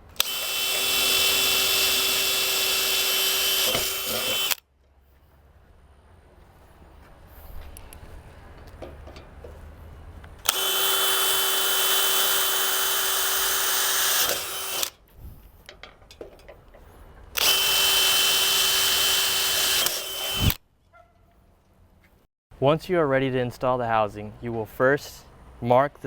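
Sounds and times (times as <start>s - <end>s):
power drill drilling: 0.1s - 4.6s, 10.4s - 15.0s, 17.4s - 20.6s.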